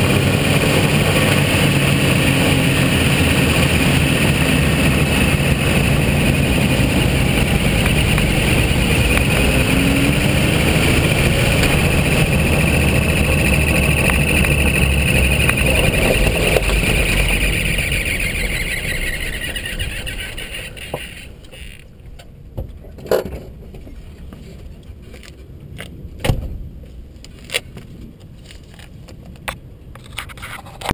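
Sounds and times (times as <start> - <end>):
high drivetrain whine: 0.0 - 22.8
tyre and drivetrain noise: 0.0 - 30.9.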